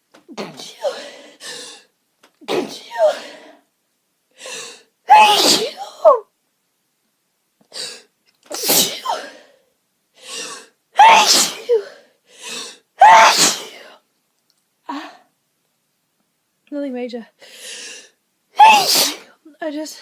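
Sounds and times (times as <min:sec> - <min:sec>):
person sneezing: 0:00.3 - 0:01.3, 0:02.4 - 0:03.5, 0:05.1 - 0:06.2, 0:07.8 - 0:09.5, 0:10.3 - 0:12.0, 0:13.0 - 0:13.9, 0:18.6 - 0:19.3.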